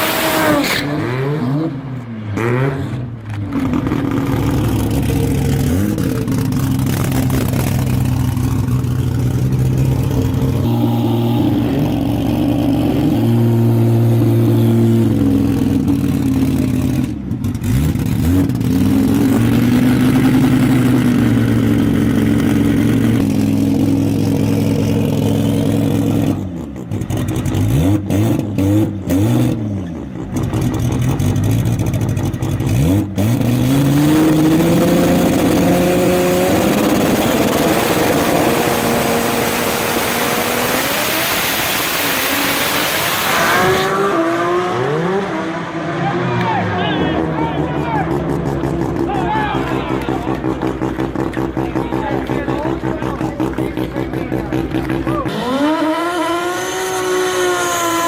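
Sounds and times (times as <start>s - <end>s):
car engine revving: 0.0s - 58.0s.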